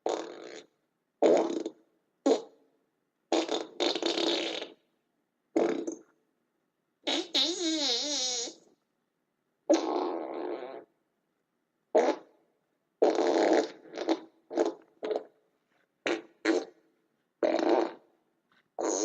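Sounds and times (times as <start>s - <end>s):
raspy fart-like blasts: 0.0s - 1.7s, 3.3s - 4.8s, 5.6s - 6.0s, 7.0s - 8.6s, 9.7s - 10.9s, 12.0s - 12.3s, 13.0s - 15.3s, 16.0s - 16.8s, 17.4s - 18.1s, 18.8s - 19.0s.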